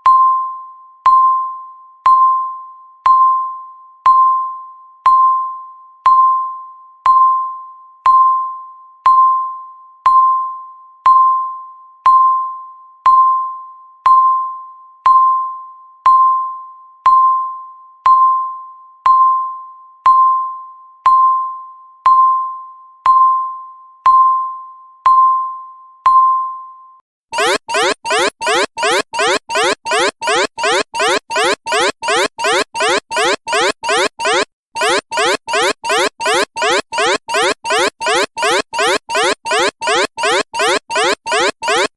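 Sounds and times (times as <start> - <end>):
timer beeping: 27.4 - 41.9.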